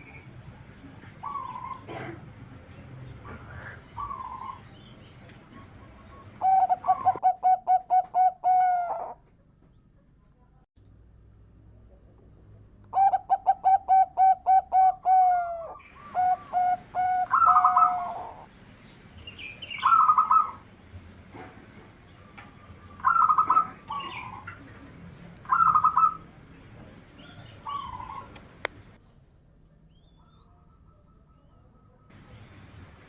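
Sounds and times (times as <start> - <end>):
dove cooing: 1.0 - 2.3, 3.2 - 4.6, 5.5 - 9.2, 12.9 - 18.5, 19.8 - 20.6, 22.2 - 24.7, 25.4 - 26.3, 27.2 - 28.6.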